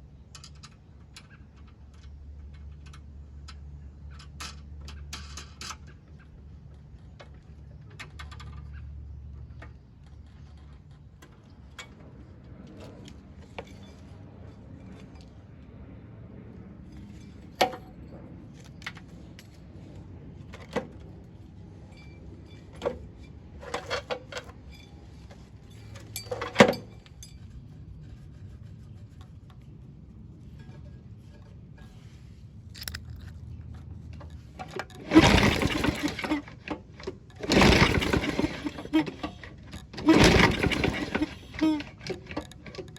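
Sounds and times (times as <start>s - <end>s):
metal tools clinking: 34.2s - 42.9s.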